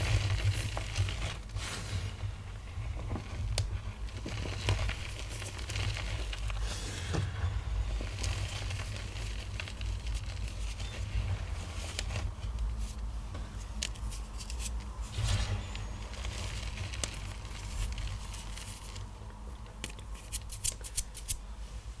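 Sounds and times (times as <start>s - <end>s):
low steady hum: 0.0s - 22.0s
crisp snaps: 19.7s - 21.4s
chalk crunching by hand: 20.1s - 21.4s.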